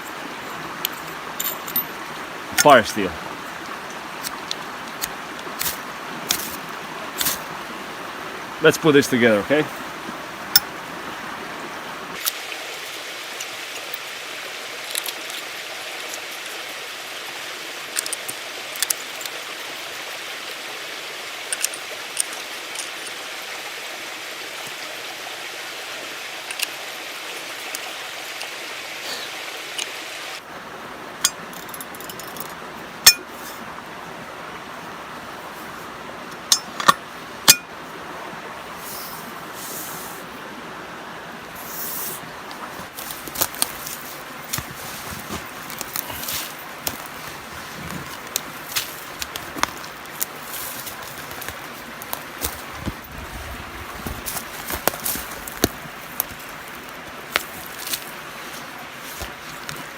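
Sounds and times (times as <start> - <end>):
metal clicks and clinks: 0.8 - 2.0, 31.3 - 33.2.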